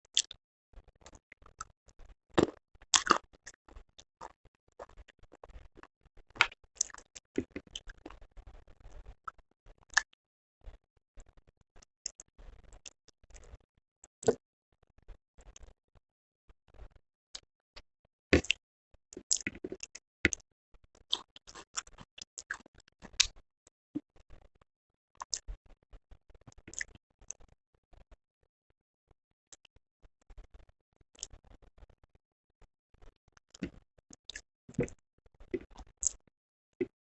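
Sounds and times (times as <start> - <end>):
person chewing: 2.4 - 3.2, 21.1 - 23.2.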